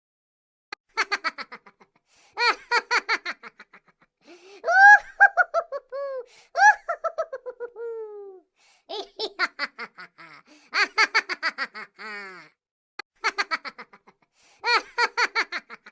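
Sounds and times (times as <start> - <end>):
laughter sound effects: 0.9 - 12.6, 13.2 - 15.9.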